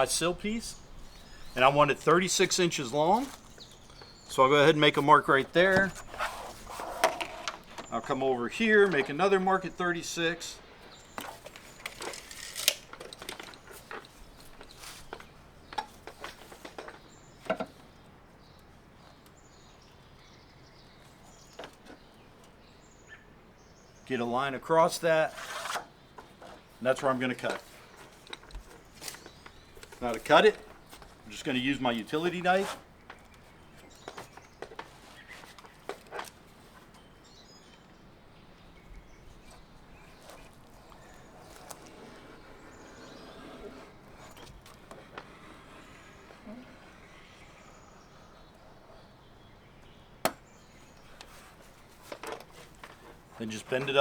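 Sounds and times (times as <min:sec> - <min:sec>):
metal trim coil and tools clicking: 0:11.5 - 0:13.7.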